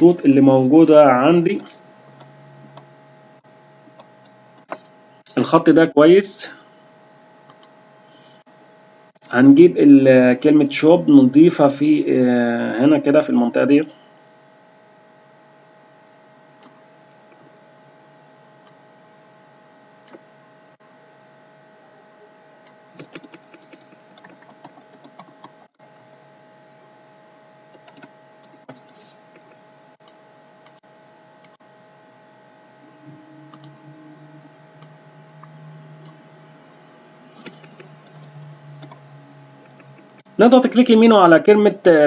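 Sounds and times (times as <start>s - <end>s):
faint electrical hum: 0.0s - 42.0s
mouse and keyboard clicks: 23.0s - 26.0s
low drone: 32.6s - 40.8s.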